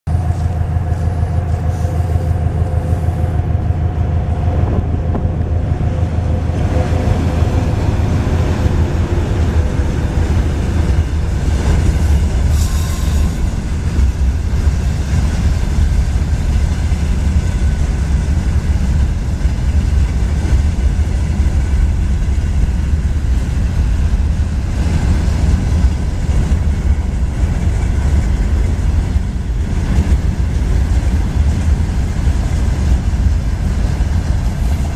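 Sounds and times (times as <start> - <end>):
train wheels rumbling on rails: 0.0 - 34.9.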